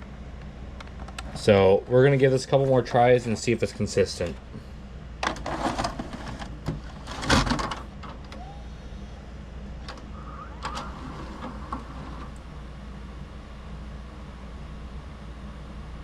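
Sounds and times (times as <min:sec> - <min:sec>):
tape loading motor running: 0:04.1 - 0:13.0
cassette clicks and knocks: 0:05.2 - 0:08.3.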